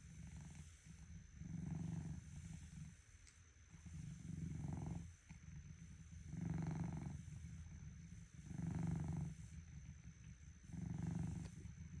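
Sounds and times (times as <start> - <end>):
cat snoring: 0.2 - 3.0, 3.8 - 7.7, 8.3 - 9.6, 10.6 - 11.8.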